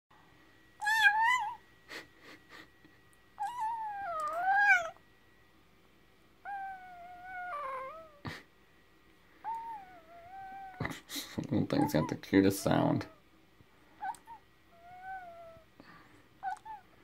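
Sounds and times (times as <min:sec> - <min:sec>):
puppy crying squeals: 0:00.8 - 0:01.6, 0:03.4 - 0:05.0, 0:06.4 - 0:08.2, 0:09.4 - 0:10.9, 0:11.7 - 0:12.2, 0:14.0 - 0:15.6, 0:16.4 - 0:16.9.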